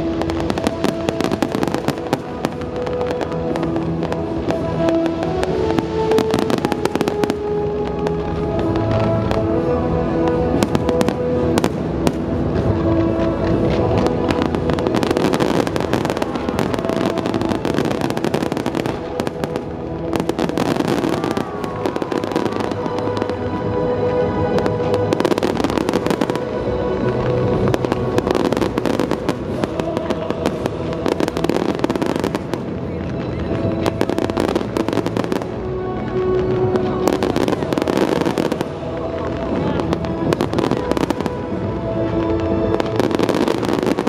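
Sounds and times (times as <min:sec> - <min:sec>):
fireworks bursting and crackling: 0:00.0 - 0:44.0
music track: 0:00.0 - 0:44.0.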